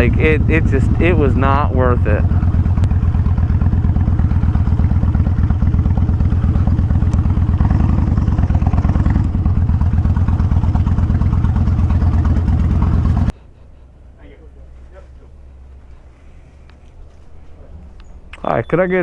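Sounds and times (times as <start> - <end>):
motorcycle engine running: 0.0 - 13.3.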